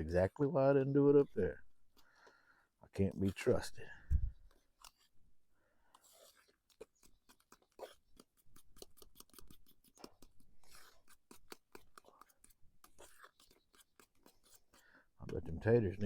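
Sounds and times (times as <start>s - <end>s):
utensil stirring mashed potatoes: 5.8s - 16.0s.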